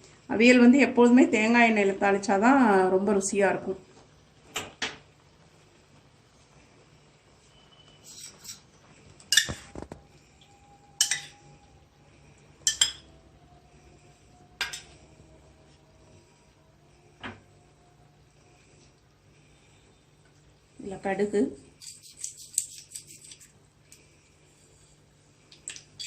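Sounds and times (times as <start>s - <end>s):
utensils clinking on cookware: 11.0s - 11.4s, 12.6s - 13.1s, 14.6s - 15.0s.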